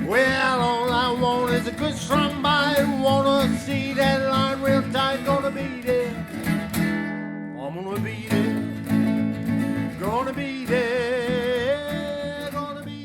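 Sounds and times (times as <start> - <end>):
person singing with vibrato: 0.0 - 6.5, 7.6 - 9.0, 9.9 - 13.0
acoustic guitar: 0.0 - 13.0.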